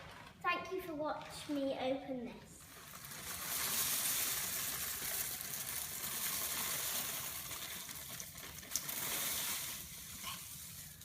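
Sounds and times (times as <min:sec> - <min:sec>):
cereal pouring into a bowl: 0:02.6 - 0:11.0.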